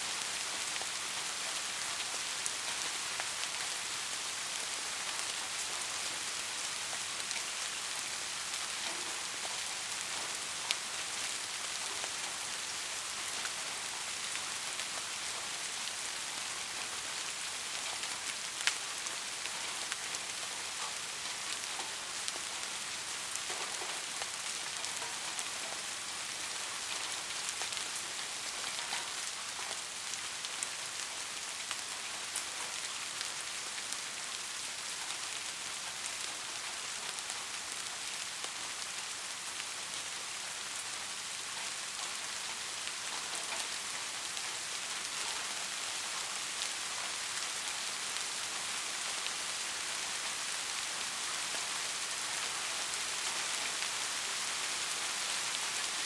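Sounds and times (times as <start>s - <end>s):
steady rain falling: 0.0s - 56.0s
rain drop ticks: 8.5s - 15.6s, 17.6s - 34.0s, 41.5s - 49.3s.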